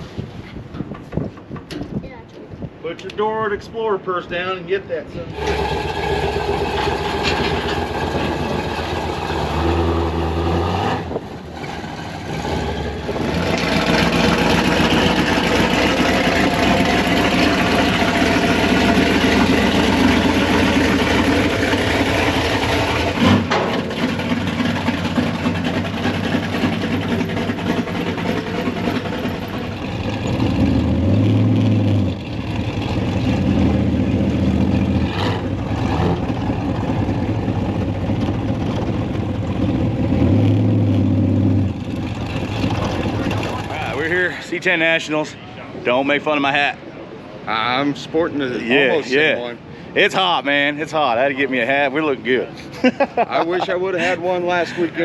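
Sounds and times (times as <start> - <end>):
vehicle engine running: 5.3 - 44.4.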